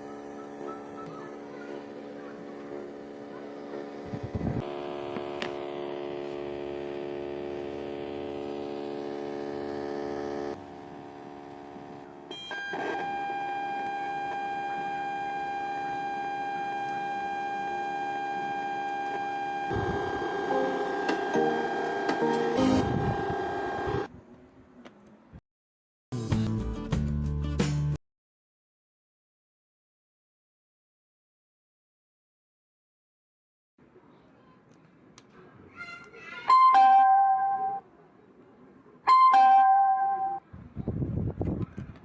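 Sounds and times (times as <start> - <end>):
electrical hum and whine: 0.0 - 24.2.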